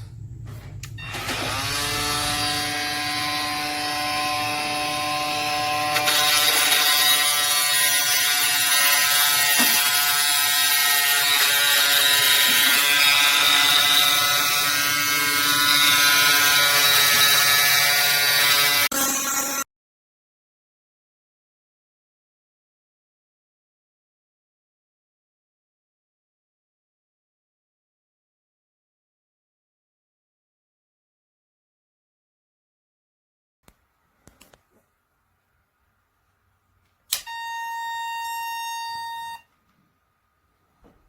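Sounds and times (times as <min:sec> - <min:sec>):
oscillating multi-tool buzzing: 0:01.0 - 0:19.7, 0:37.1 - 0:39.5.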